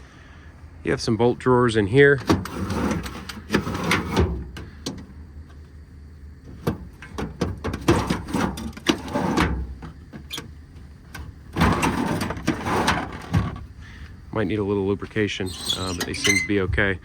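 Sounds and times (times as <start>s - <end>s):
metal drawer scraping slide: 2.2s - 4.5s, 6.5s - 10.4s, 11.2s - 13.6s, 15.4s - 16.6s
metal drawers clicking and knocking: 2.2s - 5.1s, 6.5s - 10.5s, 11.1s - 13.6s.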